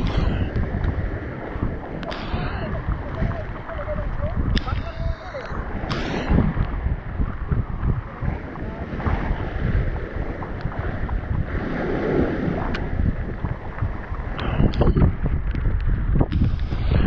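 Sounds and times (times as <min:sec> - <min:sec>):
surf washing against rocks: 0:00.0 - 0:17.0
wind buffeting microphone: 0:00.0 - 0:17.0.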